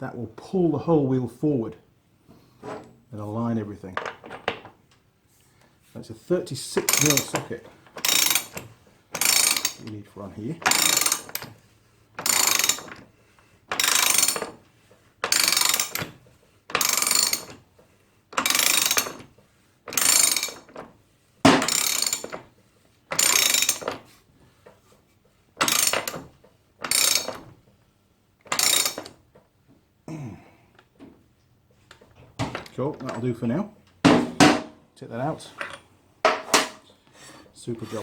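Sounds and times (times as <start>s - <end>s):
ratchet wrench clicking: 6.9s - 7.4s, 8.0s - 8.6s, 9.2s - 9.8s, 10.6s - 11.5s, 12.2s - 13.0s, 13.7s - 14.5s, 15.2s - 16.1s, 16.7s - 17.6s, 18.4s - 19.2s, 19.9s - 20.7s, 21.5s - 22.4s, 23.1s - 23.9s, 25.6s - 26.2s, 26.8s - 27.4s, 28.5s - 29.1s.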